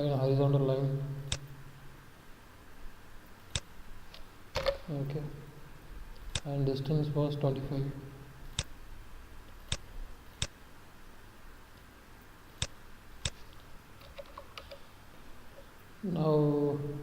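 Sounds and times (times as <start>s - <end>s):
computer mouse clicking: 12.6s - 14.8s.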